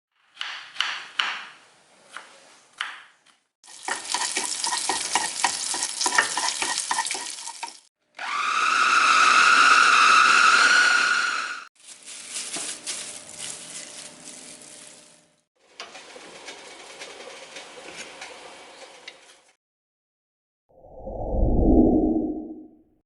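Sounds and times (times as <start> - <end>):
high whine: 20.8 - 22.7.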